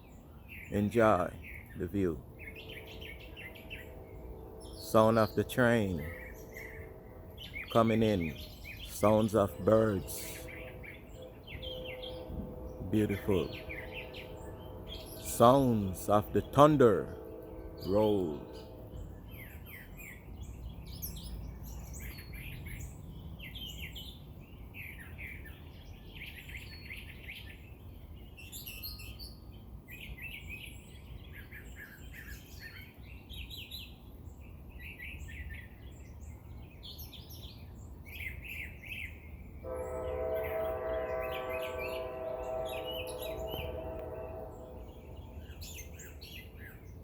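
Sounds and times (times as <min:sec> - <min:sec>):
birds chirping and calling: 0:00.0 - 0:47.0
steady horn: 0:07.7 - 0:18.9, 0:39.6 - 0:45.6.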